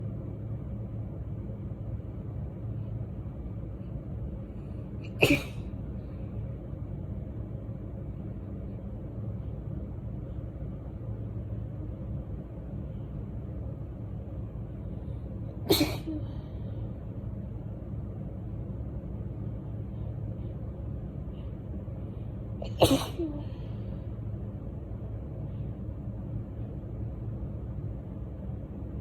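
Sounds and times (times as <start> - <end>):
low background hum: 0.0 - 29.0
woman sneezing: 5.1 - 5.6, 15.7 - 16.4, 22.6 - 23.6.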